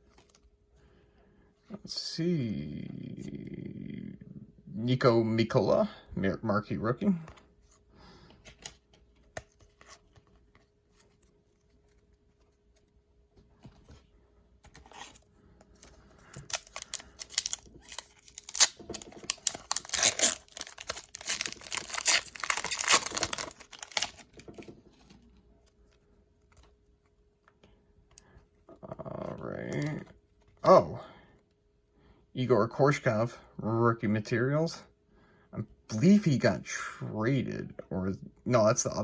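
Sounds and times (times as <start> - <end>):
wrapper tearing and crinkling: 15.8 - 24.4.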